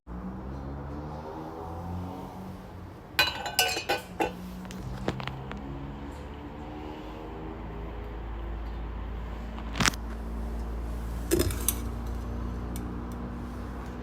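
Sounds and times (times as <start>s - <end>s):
kitchenware clinking: 3.2s - 4.4s, 11.3s - 12.0s.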